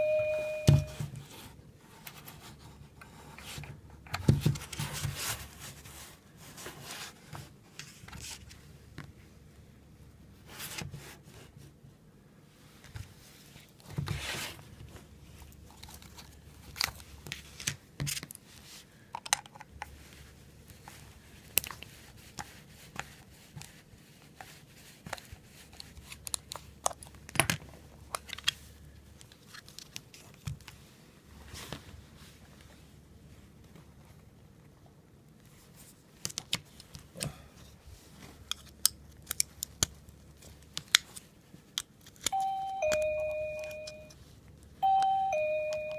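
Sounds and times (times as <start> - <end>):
scrapes and rustles: 4.4 - 8.7, 12.6 - 18.9.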